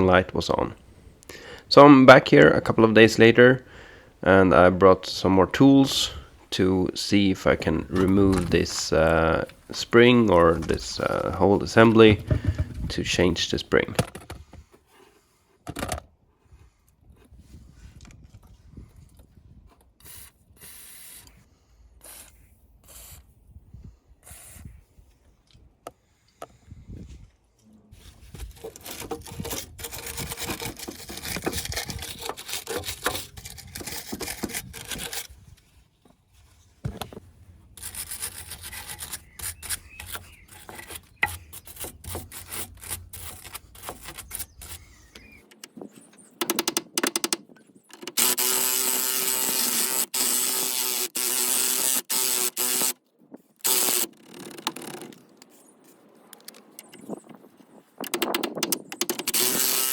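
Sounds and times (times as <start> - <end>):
metallic clicking and scraping: 28.4 - 35.4, 37.7 - 53.0, 53.6 - 55.6, 58.0 - 59.9
mechanical whir: 58.9 - 59.9.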